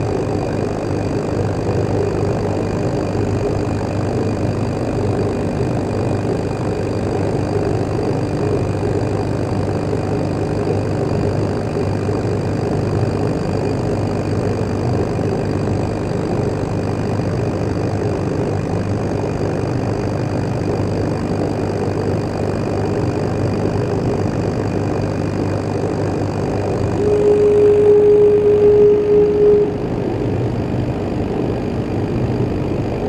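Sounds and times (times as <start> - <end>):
laser cutter mechanical hum: 0.0 - 33.0
steady whine: 25.3 - 33.0.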